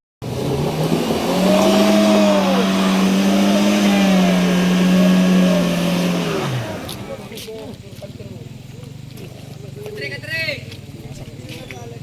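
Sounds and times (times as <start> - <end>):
engine running at high revs: 0.2 - 7.3.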